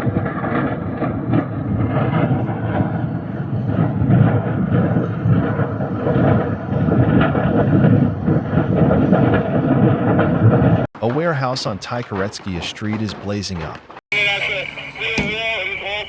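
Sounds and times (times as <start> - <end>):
large fire roaring: 1.5 - 10.8
fire crackling: 14.1 - 16.0.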